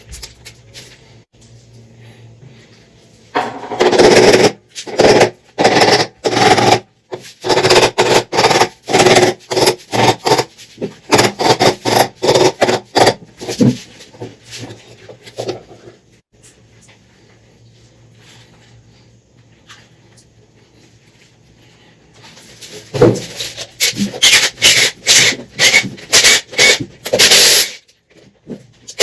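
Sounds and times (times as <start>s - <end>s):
power tool bursts: 24.2s - 27.8s.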